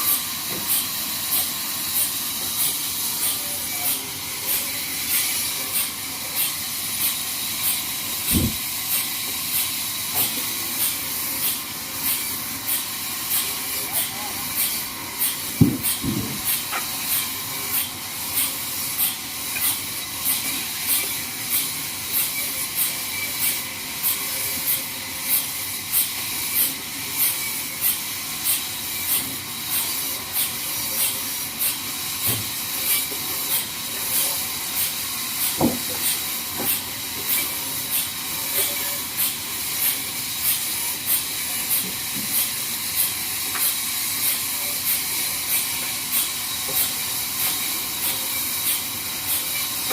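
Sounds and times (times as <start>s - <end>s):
band saw cutting a log: 0.0s - 49.9s.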